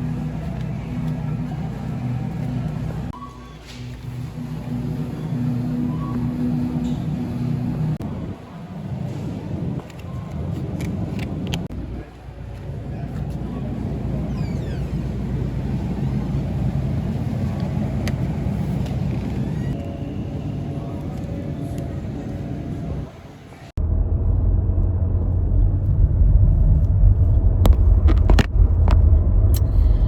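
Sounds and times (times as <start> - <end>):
car driving rumble: 20.7 - 30.0.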